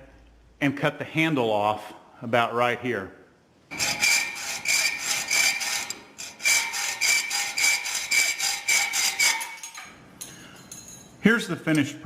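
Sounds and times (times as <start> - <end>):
hacksaw cutting metal: 3.7 - 10.0
fork ringing metallic tone: 3.8 - 11.2.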